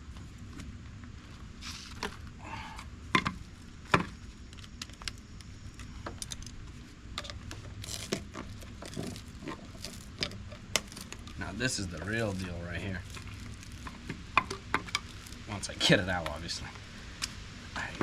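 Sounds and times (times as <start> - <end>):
rustling: 3.4 - 15.7.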